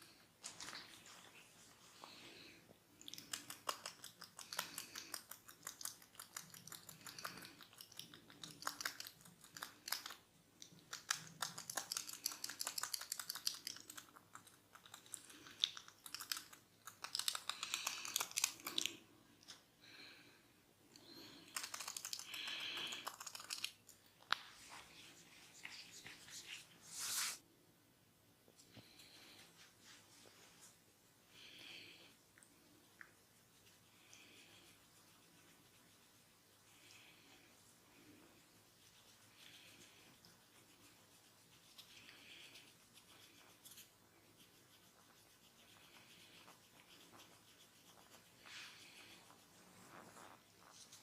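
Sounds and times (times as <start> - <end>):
fingers rubbing hair crackling: 3.0 - 19.0, 21.4 - 27.4, 38.5 - 51.0.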